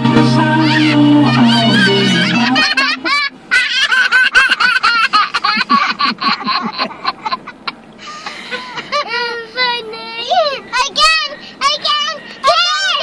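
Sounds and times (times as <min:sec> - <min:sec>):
young child laughing: 0:00.8 - 0:09.2.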